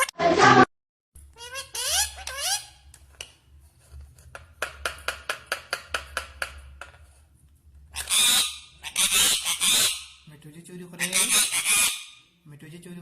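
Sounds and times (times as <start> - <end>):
parrot harsh squawk: 1.4 - 2.8, 7.9 - 10.2, 11.0 - 12.2.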